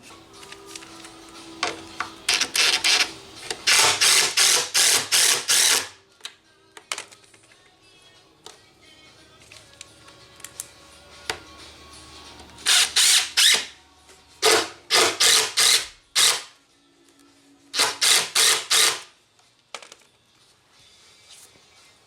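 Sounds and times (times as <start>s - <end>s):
impact drill hammering: 3.7s - 5.9s, 17.8s - 19.0s.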